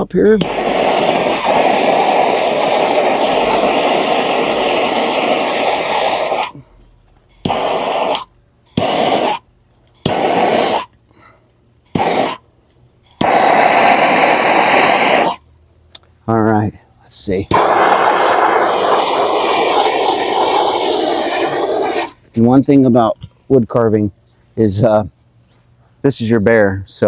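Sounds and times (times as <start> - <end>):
blowtorch flame: 0.0 - 6.6, 7.3 - 11.0, 11.9 - 12.5, 13.1 - 15.4, 17.5 - 22.2.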